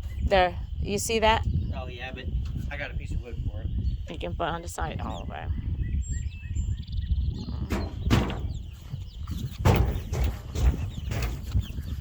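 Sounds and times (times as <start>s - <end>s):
steady low rumble: 0.0s - 12.0s
chicks peeping: 6.7s - 12.0s
short knocks or rustles: 9.3s - 11.7s.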